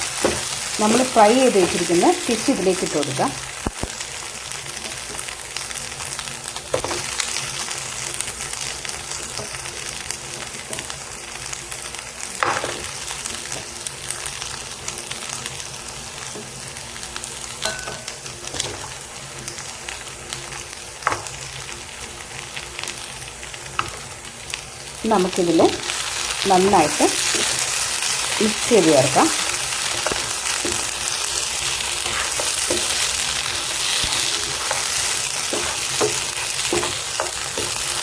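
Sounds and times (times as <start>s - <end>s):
fish sizzling in a pan: 0.0s - 38.0s.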